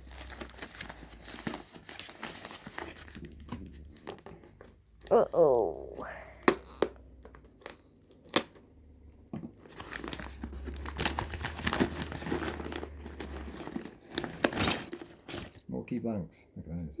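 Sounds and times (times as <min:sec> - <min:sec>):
packaging crinkling and tearing: 0:00.0 - 0:04.7, 0:06.3 - 0:08.6, 0:09.6 - 0:14.6.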